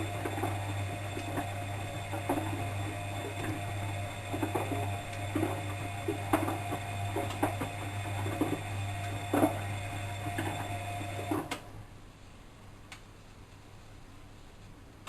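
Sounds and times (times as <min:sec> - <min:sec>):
motor stopping click: 0:00.0 - 0:11.7
washing machine motor hum: 0:00.0 - 0:11.9.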